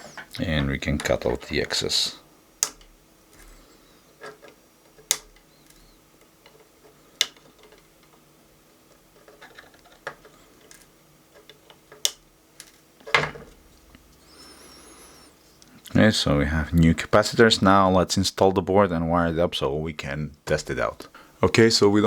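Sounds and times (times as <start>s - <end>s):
wire snips clipping leads: 2.6s - 3.6s.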